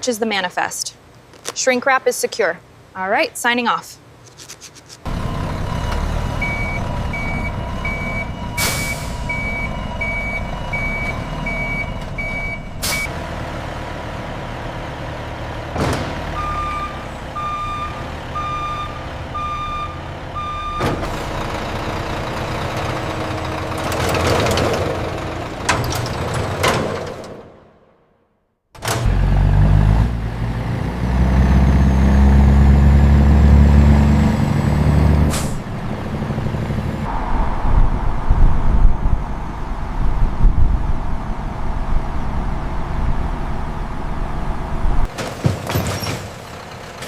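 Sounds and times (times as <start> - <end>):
reversing alarm beeping: 5.1 - 13.1, 16.3 - 21.0.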